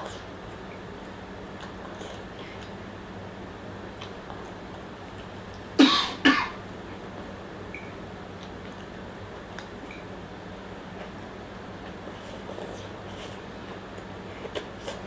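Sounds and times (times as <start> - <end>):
person coughing: 5.8 - 6.6.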